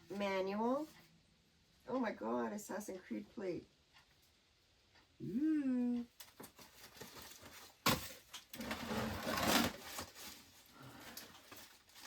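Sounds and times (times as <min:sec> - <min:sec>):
rustling of items handled: 0:06.2 - 0:12.0.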